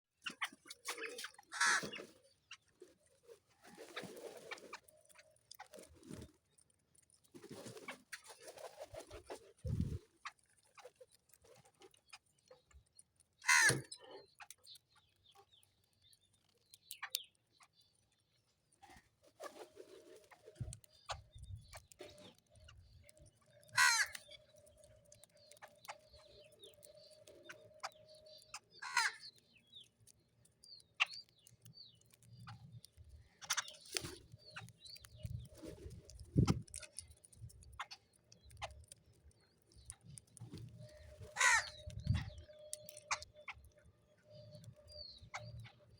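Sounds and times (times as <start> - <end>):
small birds chirping: 0.2 - 45.9
crows cawing: 1.5 - 2.0, 13.4 - 14.0, 23.7 - 24.3, 28.8 - 29.3, 41.3 - 41.9.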